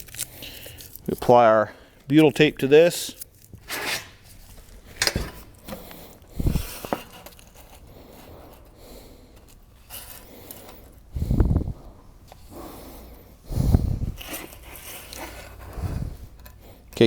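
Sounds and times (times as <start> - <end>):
tape scrapes and rustles: 0.0 - 1.4, 2.0 - 11.5, 14.0 - 17.0.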